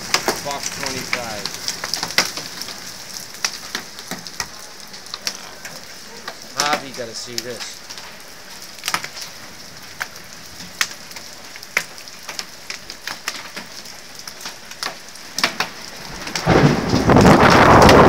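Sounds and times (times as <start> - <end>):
hail and rain patter: 0.0 - 18.0
thunder blast: 16.1 - 18.0.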